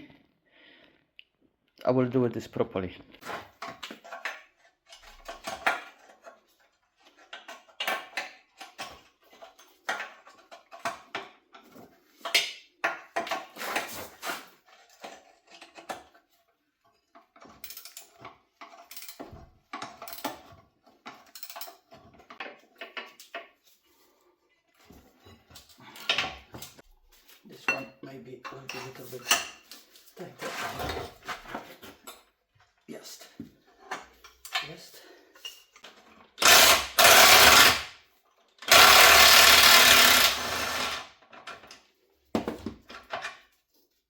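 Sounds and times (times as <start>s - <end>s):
metal tools clanking on metal: 16.8s - 23.5s, 27.6s - 29.9s.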